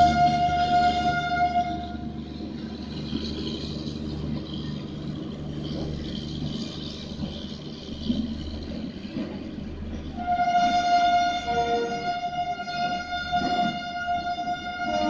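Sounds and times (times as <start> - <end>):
loud sustained horn tone: 0.0 - 2.3, 10.1 - 15.0
electric locomotive rumbling: 0.0 - 15.0.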